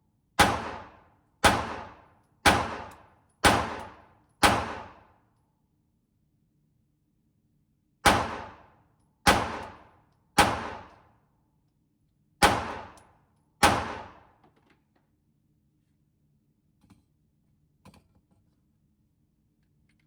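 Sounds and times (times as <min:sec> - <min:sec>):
pistol shots echoing indoors: 0:00.3 - 0:05.4, 0:08.0 - 0:11.5, 0:12.4 - 0:14.4.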